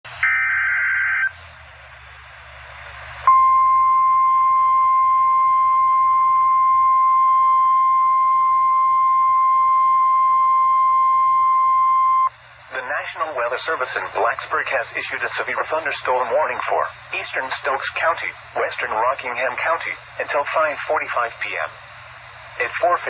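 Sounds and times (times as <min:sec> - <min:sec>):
steady high alarm tone: 0:00.2 - 0:01.3, 0:03.3 - 0:12.3
radio hiss: 0:12.5 - 0:23.0.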